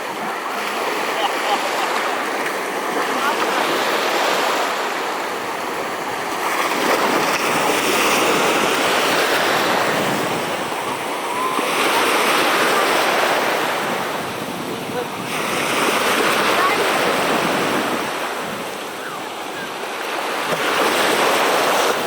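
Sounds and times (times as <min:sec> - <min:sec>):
sea water splashing: 0:00.0 - 0:22.0
wind buffeting microphone: 0:04.7 - 0:19.8.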